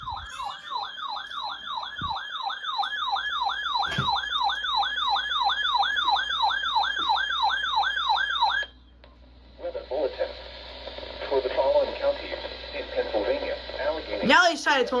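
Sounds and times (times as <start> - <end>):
electronic siren yelping: 0.0 - 8.8.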